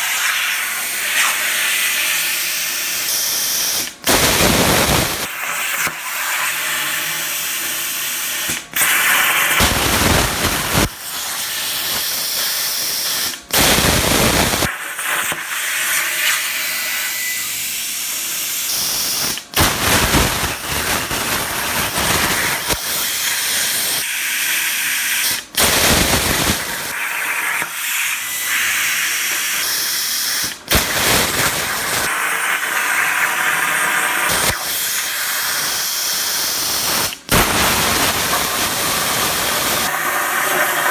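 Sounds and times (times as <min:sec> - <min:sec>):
plasma cutter hissing: 0:00.0 - 0:02.4, 0:03.1 - 0:06.8, 0:07.8 - 0:16.0, 0:18.6 - 0:24.1, 0:25.1 - 0:40.5.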